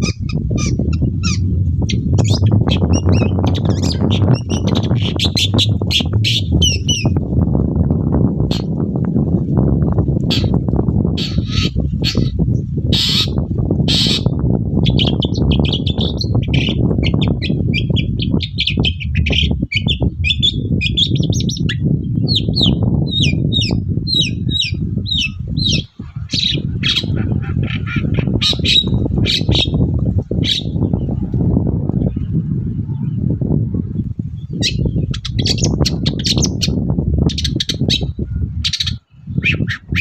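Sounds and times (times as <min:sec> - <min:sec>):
bird singing chirps: 0:00.0 - 0:07.2, 0:14.8 - 0:29.8
low rumble: 0:00.0 - 0:40.0.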